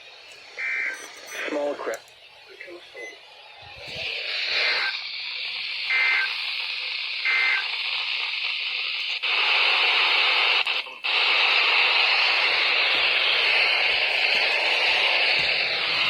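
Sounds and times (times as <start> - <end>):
radio static hiss: 0.0 - 16.0
warbling digital data tones: 0.5 - 5.1.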